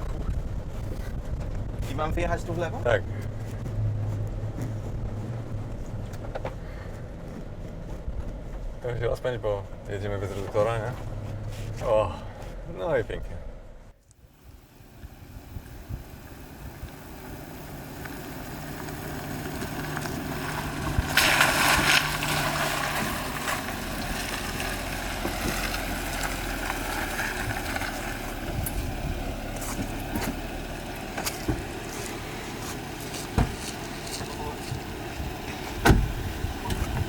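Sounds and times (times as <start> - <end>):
car engine under throttle: 0.0 - 9.0, 9.7 - 37.0
water splashing: 17.5 - 28.4.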